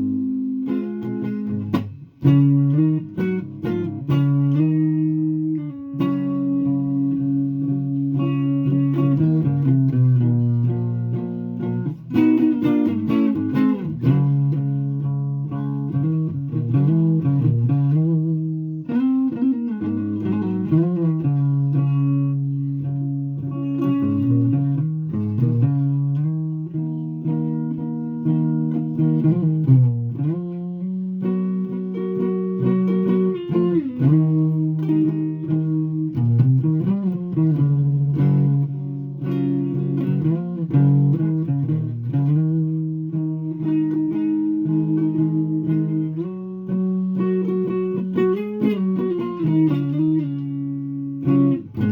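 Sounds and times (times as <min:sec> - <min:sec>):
solo guitar jam: 0:00.0 - 0:51.9.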